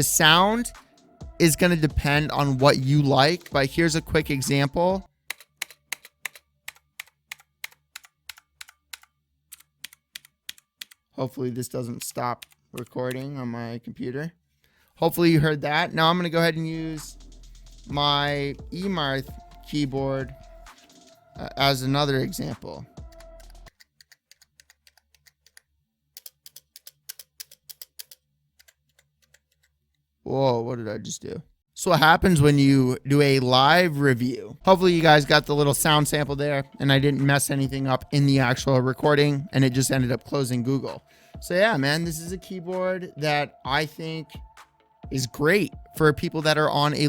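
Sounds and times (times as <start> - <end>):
mechanical keyboard key clicks: 5.3 - 11.1
mechanical keyboard typing: 5.3 - 11.1, 12.0 - 13.3, 23.4 - 29.7.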